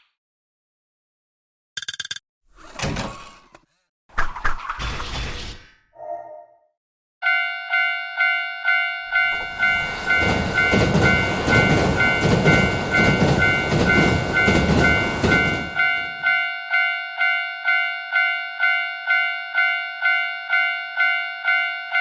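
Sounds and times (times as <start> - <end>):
railroad crossing bell ringing: 7.2 - 22.0
train passing: 9.1 - 16.4.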